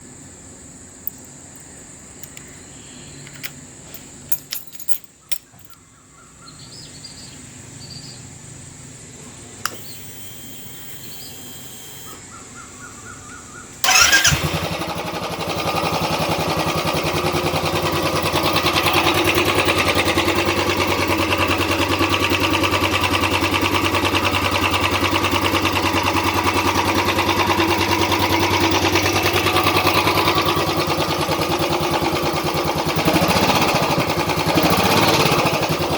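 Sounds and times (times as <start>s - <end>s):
sharp clicks: 1.1s - 2.6s, 3.2s - 3.6s, 9.6s - 12.2s
motorcycle engine starting and idling: 9.5s - 12.3s, 13.8s - 35.9s.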